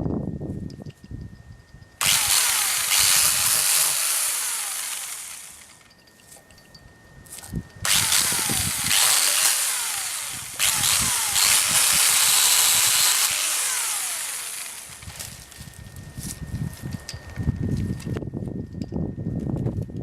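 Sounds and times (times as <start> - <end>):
falling whine: 2.0 - 6.0, 7.9 - 16.4
pole chainsaw running: 2.0 - 6.0, 7.8 - 16.4.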